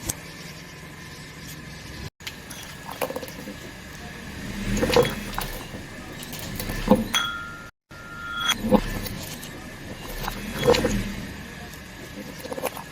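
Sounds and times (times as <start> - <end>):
low engine hum: 2.2 - 7.7, 8.6 - 12.4
tyres crushing objects: 2.2 - 7.7.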